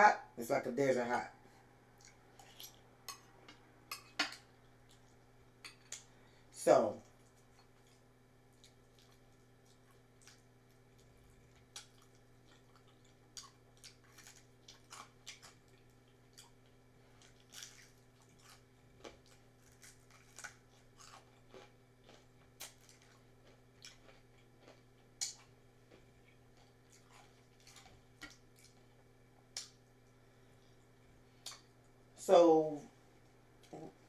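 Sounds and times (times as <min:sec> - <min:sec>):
chewing crunchy fried food: 0:01.6 - 0:32.1.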